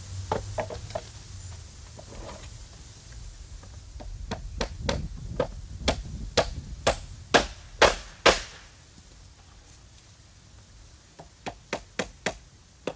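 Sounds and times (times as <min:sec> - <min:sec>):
faint low rumble: 0:00.0 - 0:07.8
sharp knocks: 0:04.0 - 0:08.7.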